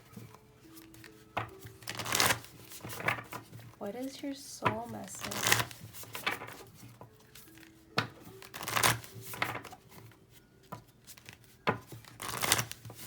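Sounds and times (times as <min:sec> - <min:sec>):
cards shuffled swishing: 0:00.0 - 0:10.1, 0:10.7 - 0:13.0
card taps: 0:04.6 - 0:09.8.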